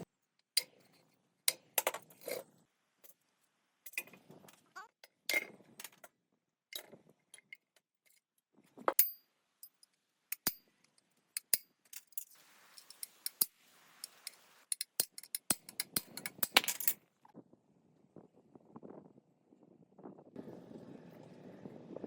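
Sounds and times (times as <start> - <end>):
soft rubbing hiss: 12.3 - 14.7.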